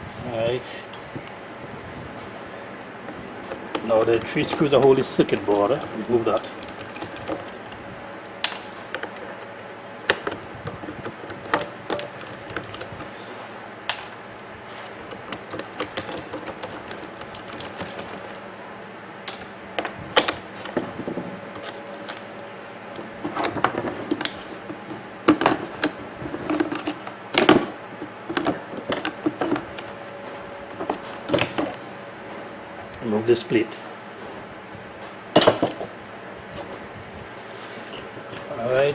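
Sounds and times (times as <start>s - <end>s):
plastic parts being handled: 3.0s - 13.2s, 14.7s - 18.4s, 19.3s - 30.0s
screwdriver backing out screws: 3.5s - 7.8s, 15.0s - 18.3s.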